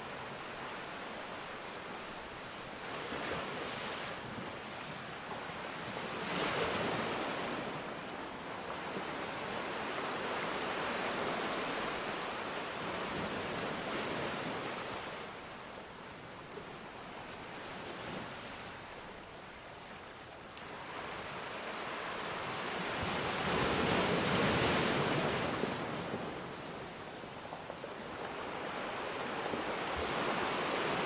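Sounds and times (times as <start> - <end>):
sea waves washing ashore: 16.8 - 31.0.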